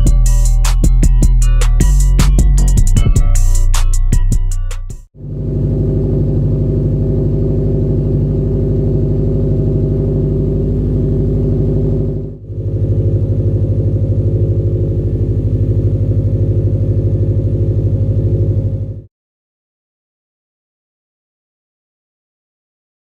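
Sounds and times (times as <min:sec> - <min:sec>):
car engine idling: 0:05.2 - 0:19.0.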